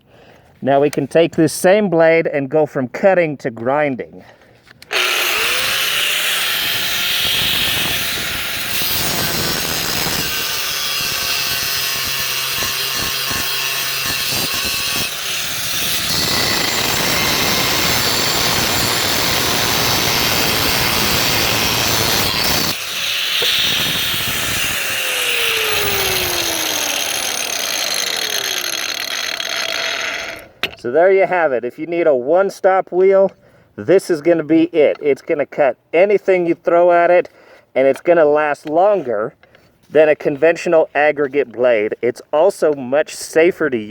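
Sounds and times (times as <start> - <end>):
angle grinder grinding: 4.8 - 30.8.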